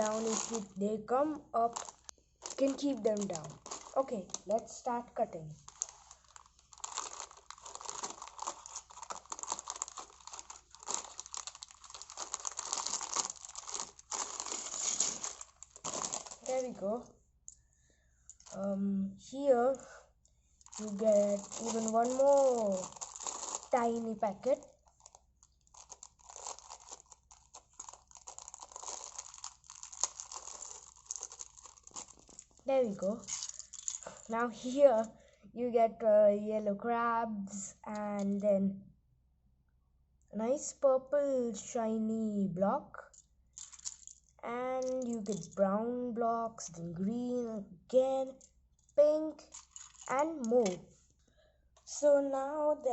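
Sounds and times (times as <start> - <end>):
plastic bag crinkling: 0.0 - 0.7, 1.6 - 5.0, 5.6 - 16.9, 20.6 - 34.7, 43.6 - 45.5, 49.5 - 50.8.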